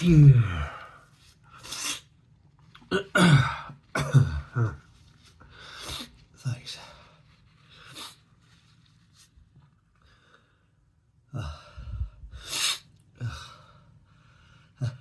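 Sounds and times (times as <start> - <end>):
person breathing and sniffing: 4.9 - 6.3, 7.1 - 9.3.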